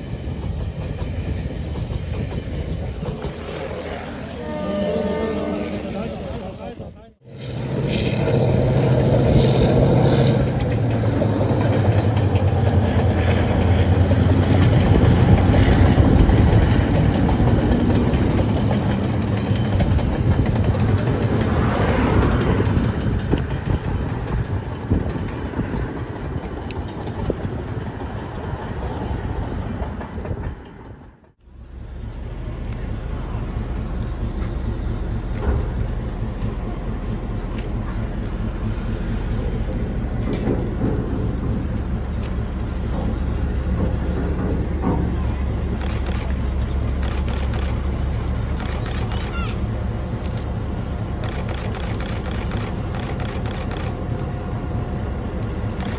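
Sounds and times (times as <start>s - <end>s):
diesel locomotive engine droning: 0.0s - 55.9s
quieter steady engine: 31.4s - 55.9s.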